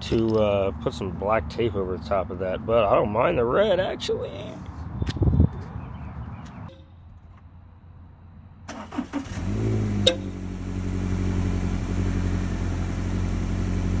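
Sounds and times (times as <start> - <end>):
car starter cranking: 8.7 - 10.6
car engine idling: 8.7 - 14.0.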